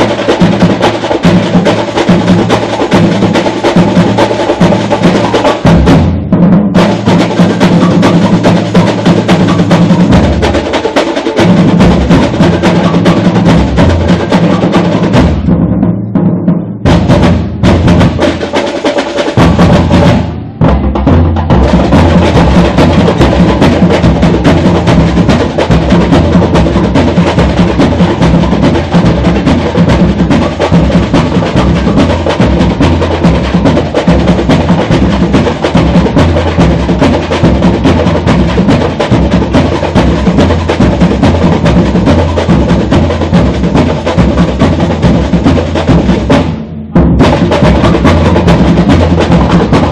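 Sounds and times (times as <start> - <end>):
samba drum section playing: 0.0 - 49.9
deep bass drums: 11.5 - 18.2.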